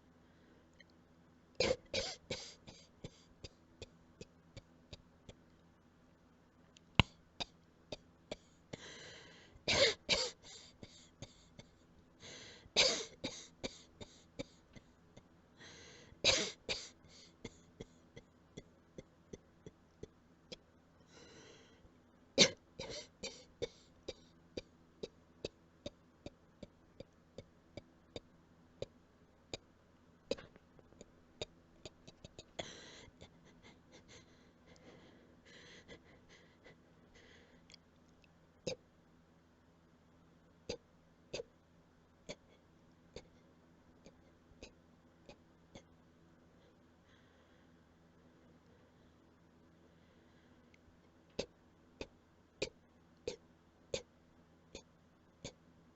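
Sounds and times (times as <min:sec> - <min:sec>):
breathing: 0:00.2 - 0:00.7, 0:08.4 - 0:09.6, 0:10.4 - 0:12.8, 0:15.6 - 0:16.2, 0:17.0 - 0:18.0, 0:21.0 - 0:21.9, 0:32.6 - 0:37.8, 0:46.6 - 0:47.9, 0:49.8 - 0:50.8
person coughing quietly: 0:01.6 - 0:03.6, 0:09.7 - 0:11.7, 0:12.7 - 0:15.3, 0:16.2 - 0:18.7, 0:22.4 - 0:24.2.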